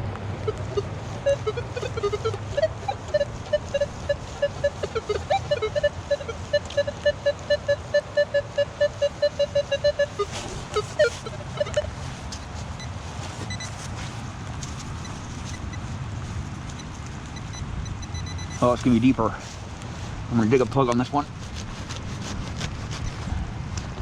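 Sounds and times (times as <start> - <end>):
metal detector beeps: 0.4 - 11.9, 12.8 - 13.9, 15.0 - 15.8, 16.7 - 19.0.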